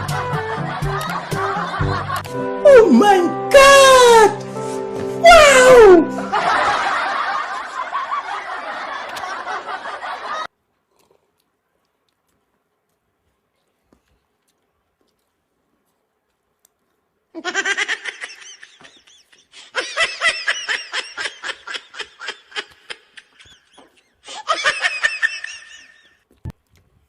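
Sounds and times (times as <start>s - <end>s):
person laughing hard: 5.2s - 10.5s, 17.4s - 26.1s.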